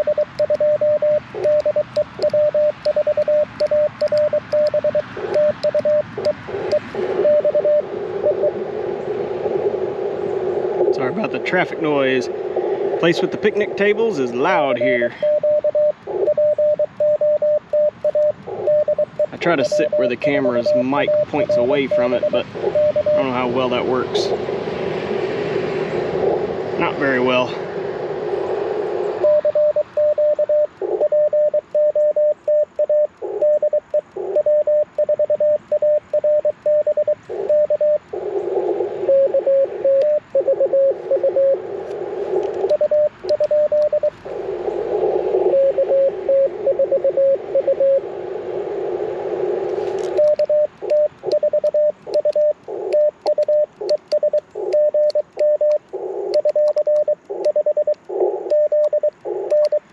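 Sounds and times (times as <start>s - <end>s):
lower-pitched morse reply: 0.0s - 8.6s, 10.7s - 24.4s, 42.6s - 48.3s
morse code sidetone: 0.0s - 8.6s, 13.0s - 23.7s, 29.2s - 41.6s, 42.4s - 44.2s, 45.3s - 48.0s, 49.9s - 59.9s
radio receiver hiss: 0.0s - 59.9s.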